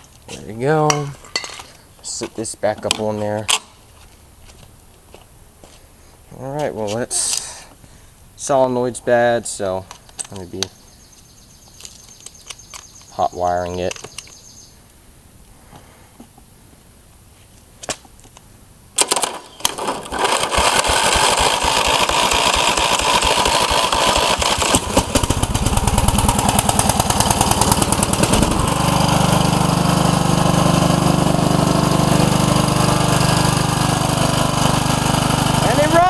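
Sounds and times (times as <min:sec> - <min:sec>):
mower engine cranking and running: 0:19.0 - 0:36.0.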